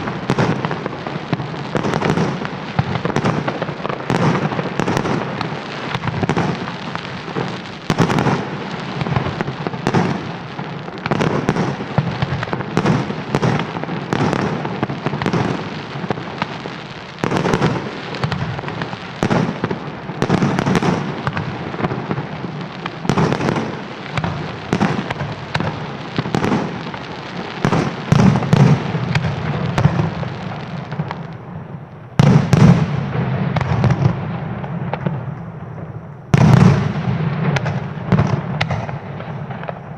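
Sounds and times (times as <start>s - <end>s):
firework crackle: 0.0s - 39.9s.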